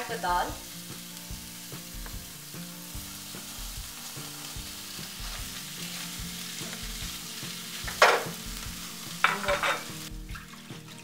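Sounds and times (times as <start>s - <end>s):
oil sizzling in a pan: 0.0s - 11.0s
spoon scraping a pan: 9.2s - 10.0s.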